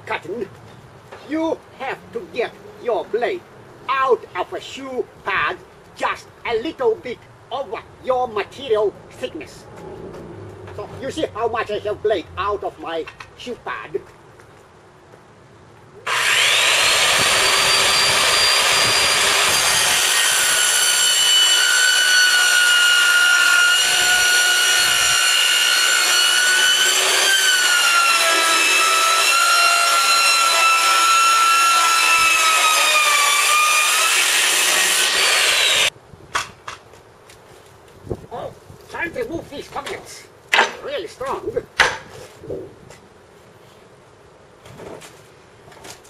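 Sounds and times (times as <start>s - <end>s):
circular saw cutting metal sheet: 16.1s - 35.9s.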